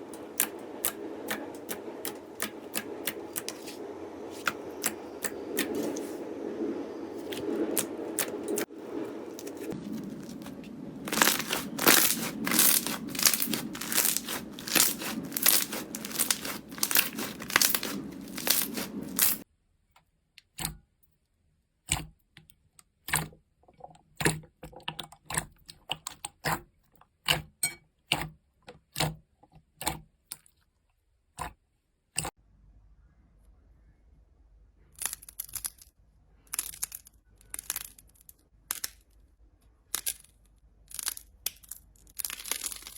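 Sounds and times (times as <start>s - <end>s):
slime crackling and popping: 7.2s - 19.4s, 42.2s - 42.9s.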